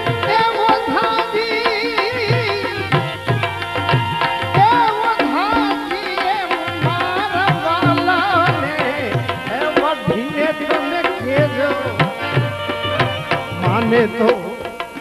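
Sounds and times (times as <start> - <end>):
tabla rhythm: 0.0 - 15.0.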